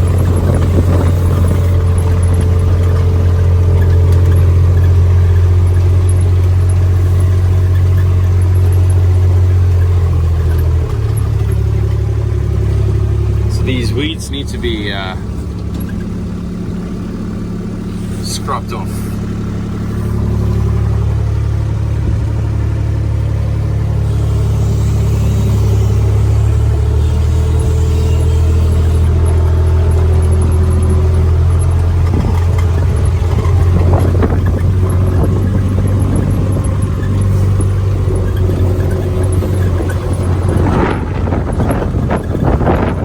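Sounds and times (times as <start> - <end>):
tractor engine running: 0.0 - 43.0
knocks and clatters: 26.9 - 43.0.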